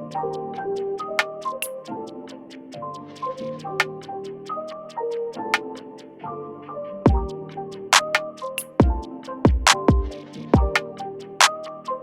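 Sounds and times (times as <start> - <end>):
steady ticking beat: 7.1 - 12.0.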